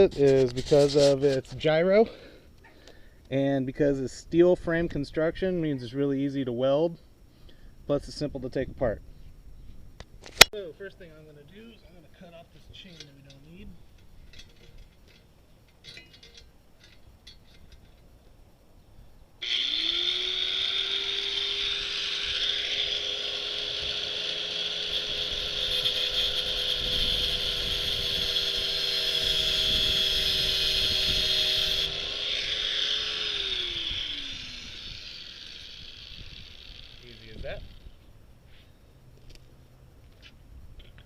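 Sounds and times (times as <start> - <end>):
power cutting tool motor whine: 19.4 - 38.1.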